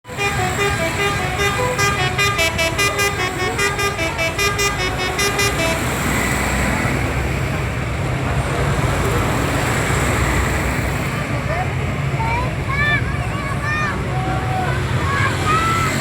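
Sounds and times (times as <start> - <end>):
multi-tone vehicle horn tune: 0.0 - 7.1
engine and traffic rumble: 0.0 - 16.0.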